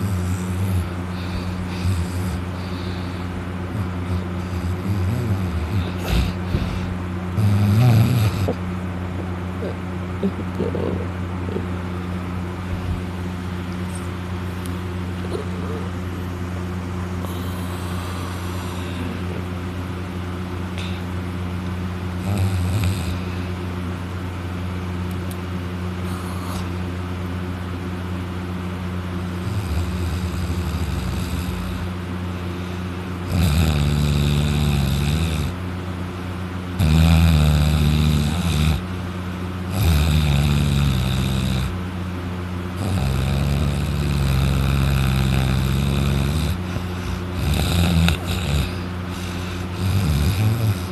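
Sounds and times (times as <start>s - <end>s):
man snoring: 0.0s - 8.6s, 17.2s - 19.5s, 22.1s - 23.5s, 26.0s - 26.8s, 29.3s - 35.6s, 36.8s - 39.0s, 39.7s - 41.8s, 42.7s - 50.9s
steady low hum: 0.0s - 50.9s.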